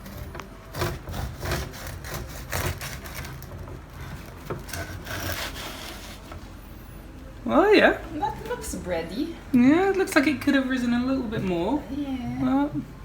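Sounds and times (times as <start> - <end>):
bread scraping on hard surface: 0.0 - 6.5.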